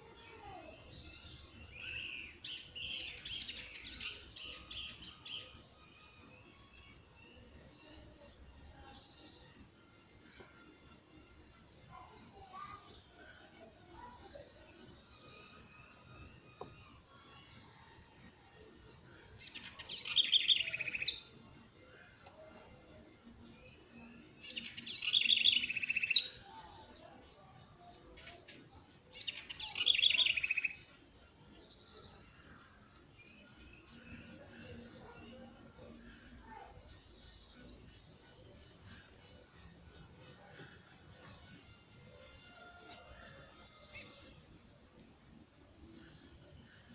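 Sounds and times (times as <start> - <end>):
small birds chirping: 0.0 - 9.6, 11.8 - 42.7
songbird singing trills: 0.8 - 9.2, 17.7 - 21.3, 23.6 - 28.4, 29.1 - 39.7.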